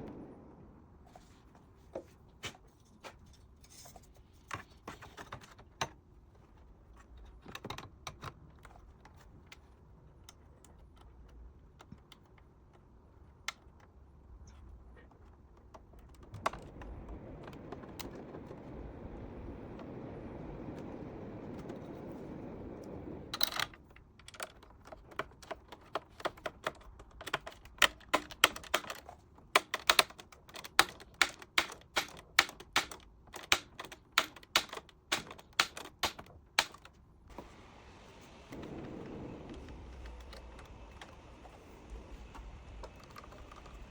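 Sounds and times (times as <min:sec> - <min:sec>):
steady rushing noise: 0:00.0 - 0:01.4, 0:16.3 - 0:23.4, 0:37.3 - 0:43.9.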